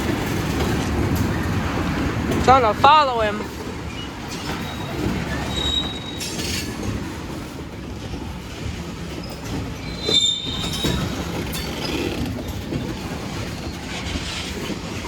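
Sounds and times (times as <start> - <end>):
train wheels rumbling on rail: 0.0 - 15.0
high wheel squeal: 3.9 - 6.8, 9.2 - 15.0.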